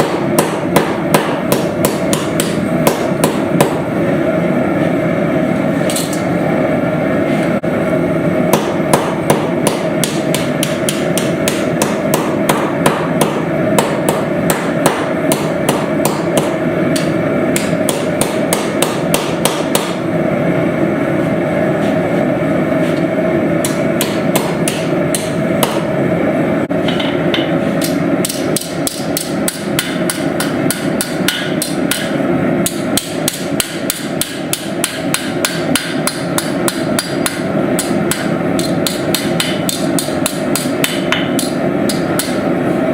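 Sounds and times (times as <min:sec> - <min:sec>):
hammer striking steel on anvil: 0:00.0 - 0:03.9, 0:08.5 - 0:20.0, 0:23.6 - 0:25.9, 0:26.8 - 0:42.5.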